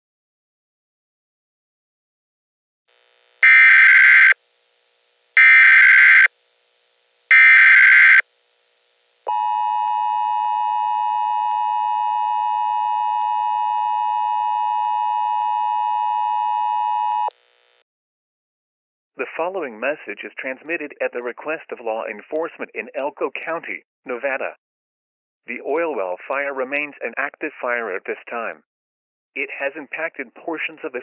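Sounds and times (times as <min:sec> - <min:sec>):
loud steady attention tone: 0:03.1 - 0:04.4, 0:05.4 - 0:17.8
screeching digital data bursts: 0:03.4 - 0:04.4, 0:05.4 - 0:06.3, 0:07.3 - 0:08.2.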